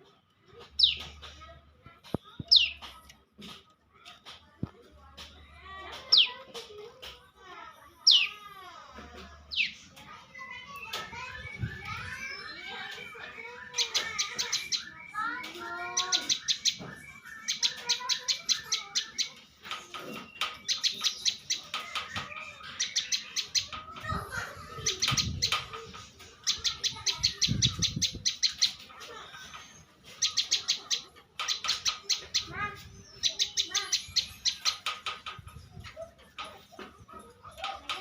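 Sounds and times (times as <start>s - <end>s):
bird singing rapid high chirps: 0.7s - 1.3s, 2.4s - 2.9s, 9.5s - 23.9s, 24.8s - 28.9s, 29.8s - 35.2s.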